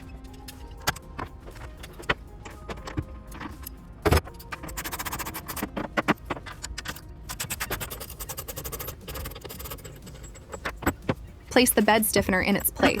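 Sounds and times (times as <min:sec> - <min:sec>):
ratchet clicking: 0:04.4 - 0:11.1.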